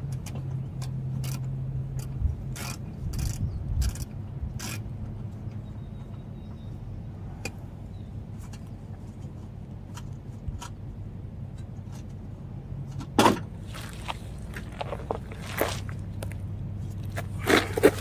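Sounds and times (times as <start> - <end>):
steady low hum: 13.4 - 18.0.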